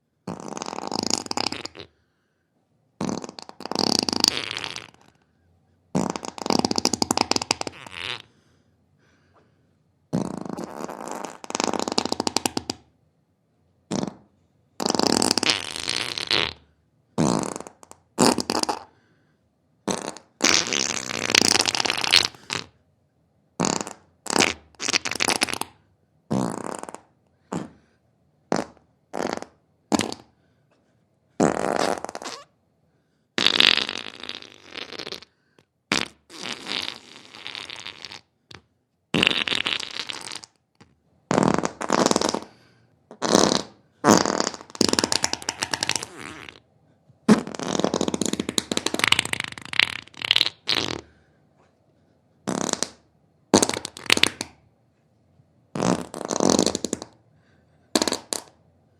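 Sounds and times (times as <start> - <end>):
human farts: 0.3 - 2.0, 3.0 - 5.2, 5.9 - 8.3, 10.1 - 12.9, 13.9 - 19.0, 19.8 - 22.8, 23.6 - 27.9, 28.5 - 30.4, 31.4 - 32.6, 33.4 - 46.6, 47.3 - 51.2, 52.4 - 54.6, 55.7 - 57.2, 57.9 - 58.6.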